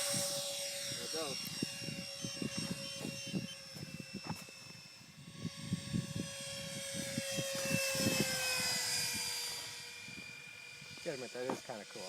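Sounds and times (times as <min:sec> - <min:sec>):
model plane electric fans whining: 0:00.0 - 0:12.0.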